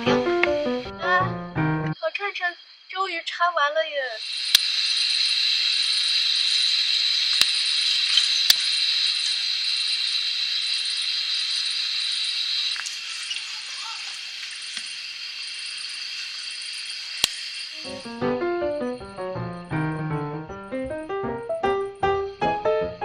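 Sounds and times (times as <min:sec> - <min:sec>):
pulsing insect trill: 0:00.0 - 0:03.2, 0:04.2 - 0:22.8
insect shrill: 0:04.2 - 0:19.0
sharp clicks: 0:07.3 - 0:08.7, 0:17.2 - 0:17.4.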